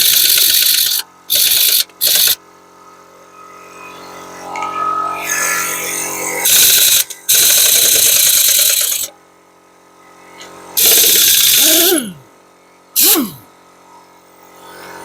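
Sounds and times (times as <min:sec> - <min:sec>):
pneumatic air tool whine: 0:00.0 - 0:02.4, 0:03.5 - 0:09.1, 0:10.4 - 0:12.2, 0:13.0 - 0:13.4.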